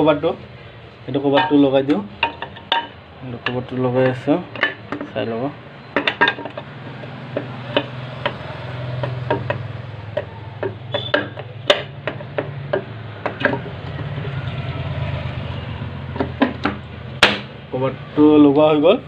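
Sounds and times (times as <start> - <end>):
sharp metal clicks and taps: 7.3 - 13.6.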